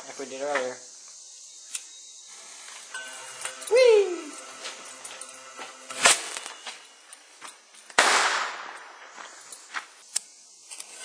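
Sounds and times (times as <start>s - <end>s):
bottle rocket bang: 8.0s - 8.9s.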